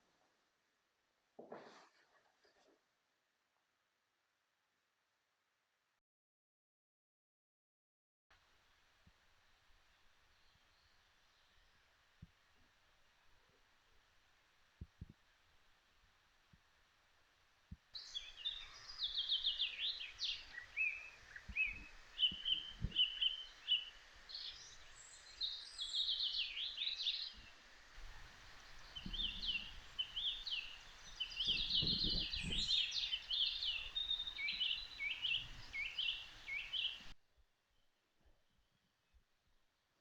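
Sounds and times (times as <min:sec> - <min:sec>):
background hiss: 0:08.4 - 0:37.2
birds chirping and singing: 0:28.9 - 0:37.1.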